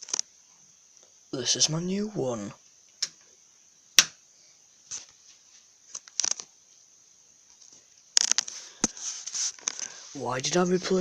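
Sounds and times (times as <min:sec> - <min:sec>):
rustling handling noise: 0:07.5 - 0:10.8.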